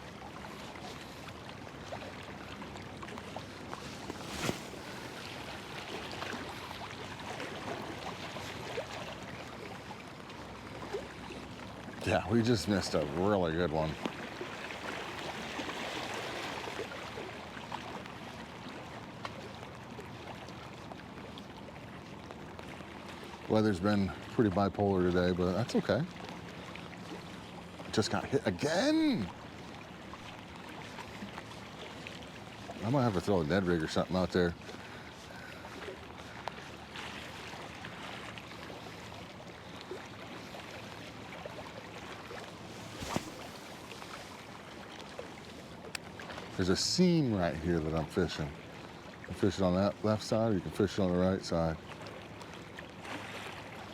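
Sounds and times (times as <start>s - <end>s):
river current rushing: 3.4s - 9.1s, 27.6s - 29.4s, 41.8s - 49.4s
faint ticks: 34.6s - 36.7s.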